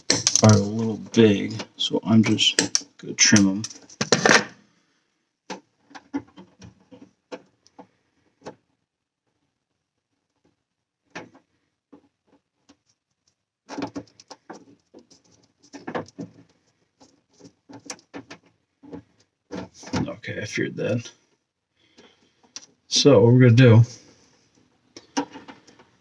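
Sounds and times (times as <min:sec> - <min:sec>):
wire snips: 0:00.0 - 0:00.8, 0:02.5 - 0:04.4
tools clicking and scraping: 0:00.0 - 0:01.0, 0:02.2 - 0:04.5.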